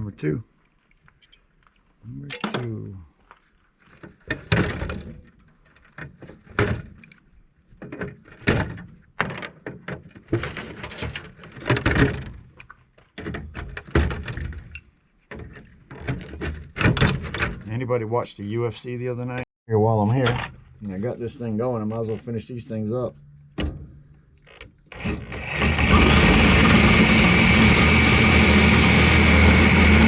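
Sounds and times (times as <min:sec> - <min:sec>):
metal clanks and thuds: 0:23.4 - 0:24.1.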